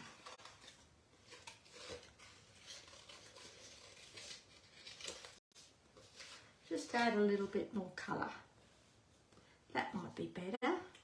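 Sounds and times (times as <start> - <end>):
paper rustling: 0.0 - 7.5.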